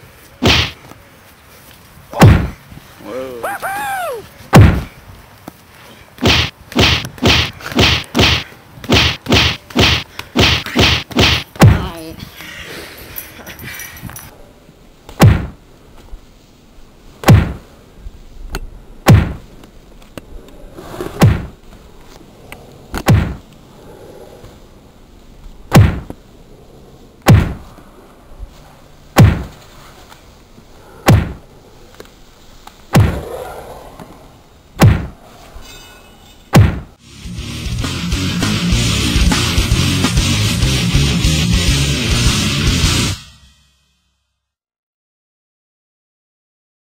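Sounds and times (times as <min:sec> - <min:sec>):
low background noise: 0:00.0 - 0:37.1
heavy whacking impact: 0:00.4 - 0:00.8, 0:02.2 - 0:02.6, 0:04.5 - 0:04.9, 0:06.2 - 0:11.9, 0:15.1 - 0:15.6, 0:17.2 - 0:17.7, 0:19.0 - 0:19.5, 0:21.1 - 0:21.6, 0:22.9 - 0:23.5, 0:25.7 - 0:26.2, 0:27.2 - 0:27.7, 0:29.1 - 0:29.6, 0:31.0 - 0:31.4, 0:32.9 - 0:33.4, 0:34.8 - 0:35.2, 0:36.5 - 0:43.7.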